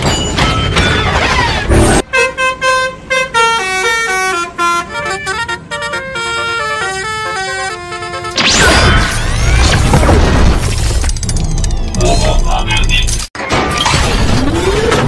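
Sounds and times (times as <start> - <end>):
bus horn playing a tune: 2.0 - 8.4.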